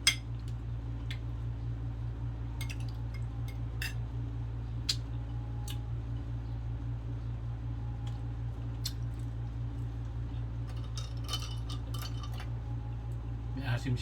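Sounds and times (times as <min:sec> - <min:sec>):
steady low hum: 0:00.0 - 0:14.0
wet mouth clicks eating: 0:04.8 - 0:05.9, 0:08.8 - 0:09.2.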